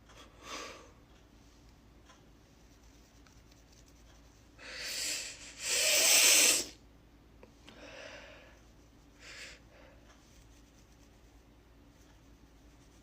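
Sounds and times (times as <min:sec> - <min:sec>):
noisy inhaled breath: 0:04.6 - 0:06.8
person sneezing: 0:04.9 - 0:06.8.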